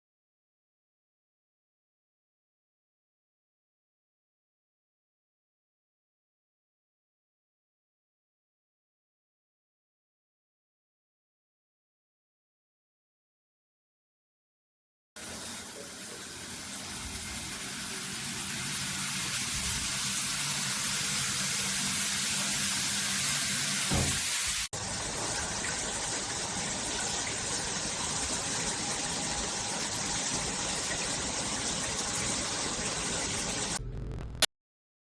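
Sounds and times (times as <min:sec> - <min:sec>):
shower water spraying: 0:15.2 - 0:33.8.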